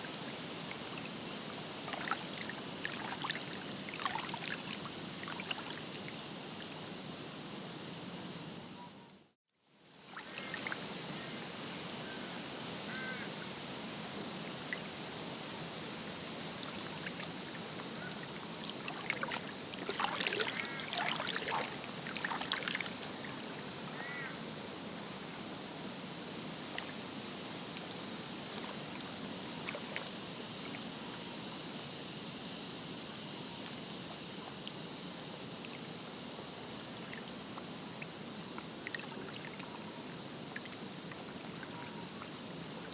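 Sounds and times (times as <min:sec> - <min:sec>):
gentle water noise: 0:00.0 - 0:09.1, 0:09.7 - 0:42.9
water splashing: 0:18.6 - 0:23.3
short bird calls: 0:24.0 - 0:24.4.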